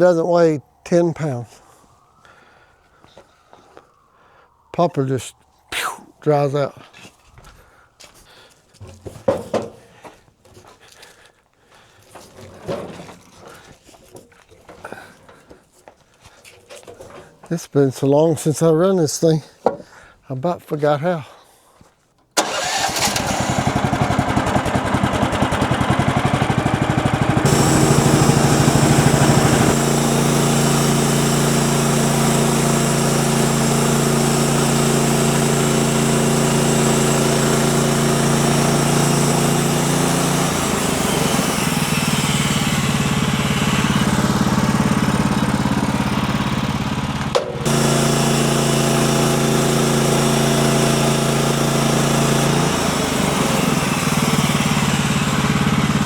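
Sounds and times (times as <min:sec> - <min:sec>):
small sawmill engine running: 0:22.4 - 0:56.0.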